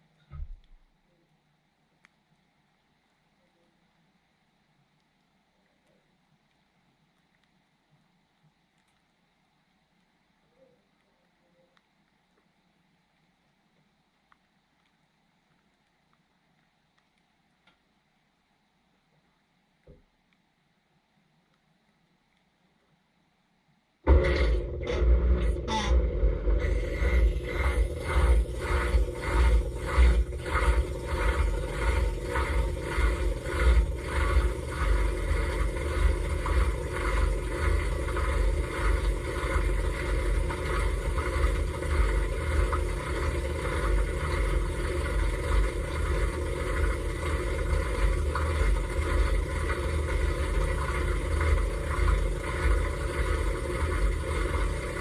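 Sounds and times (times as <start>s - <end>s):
dishwasher motor hum: 24.1s - 55.0s.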